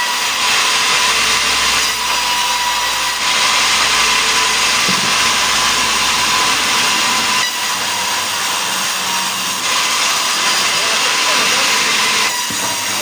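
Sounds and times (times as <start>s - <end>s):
sawmill machine low hum: 0.0s - 8.3s
saw cutting wood: 0.0s - 13.0s.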